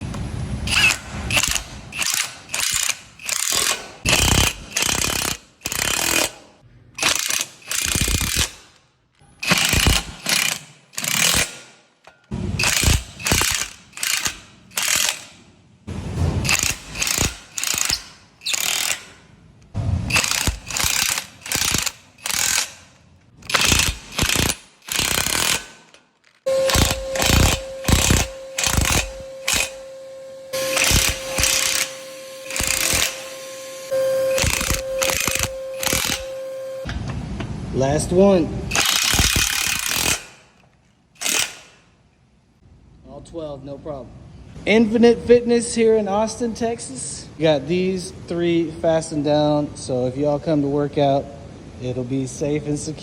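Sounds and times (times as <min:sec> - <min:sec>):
impact wrench hammering: 0:00.7 - 0:08.8, 0:09.4 - 0:37.0, 0:38.7 - 0:40.6, 0:41.2 - 0:41.8
steady tone: 0:26.5 - 0:36.9.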